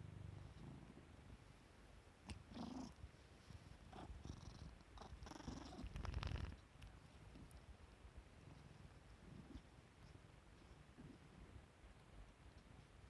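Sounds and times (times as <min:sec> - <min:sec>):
cat purring: 0:00.0 - 0:01.5, 0:02.3 - 0:07.7, 0:08.3 - 0:11.7.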